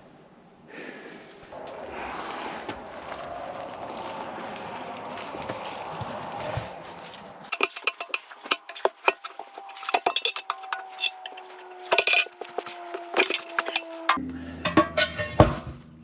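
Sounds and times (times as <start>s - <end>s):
steel tools clinking on metal: 7.5s - 14.2s
struck steel part ringing: 7.5s - 14.2s.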